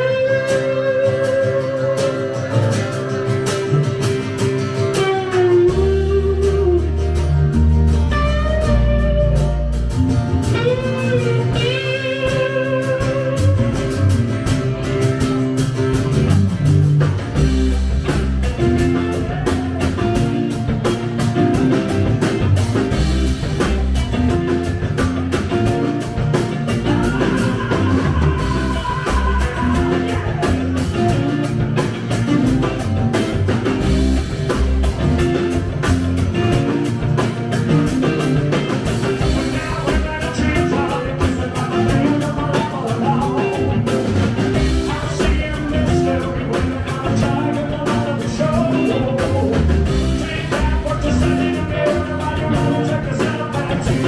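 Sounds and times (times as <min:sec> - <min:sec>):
drum kit playing: 0:00.0 - 0:54.0
guitar: 0:00.0 - 0:54.0.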